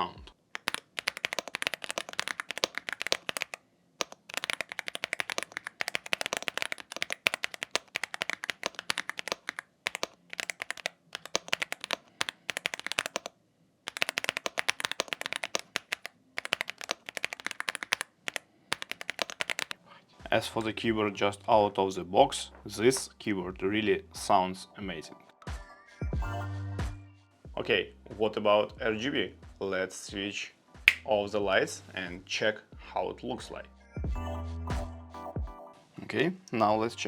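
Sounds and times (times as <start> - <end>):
mechanical keyboard typing: 0.6 - 19.8.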